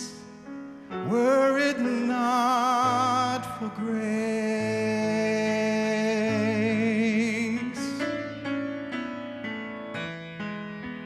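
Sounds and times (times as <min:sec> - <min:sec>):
person singing with vibrato: 0:00.0 - 0:08.2
piano chords: 0:00.0 - 0:11.0.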